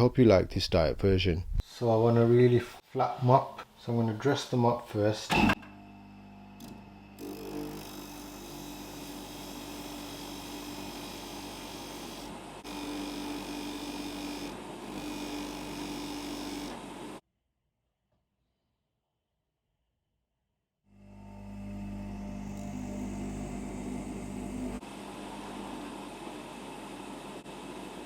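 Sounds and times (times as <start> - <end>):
polishing motor humming: 21.0 - 28.0.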